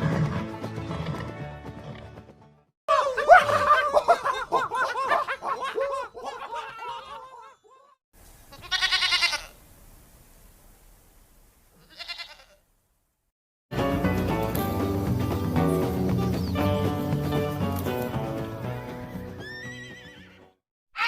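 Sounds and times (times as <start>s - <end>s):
goat bleating: 8.5s - 9.6s, 11.8s - 12.6s.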